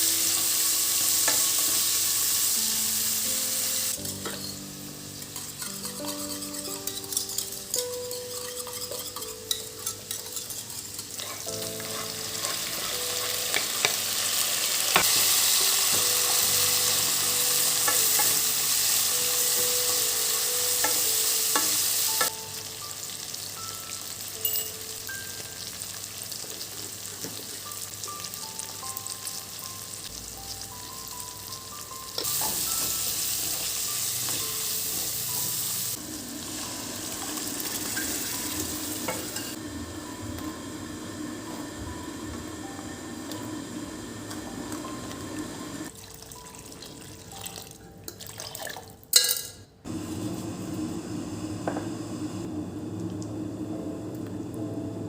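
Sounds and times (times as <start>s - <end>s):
food sizzling in a frying pan: 0.0s - 46.0s
soft background music: 0.0s - 49.8s.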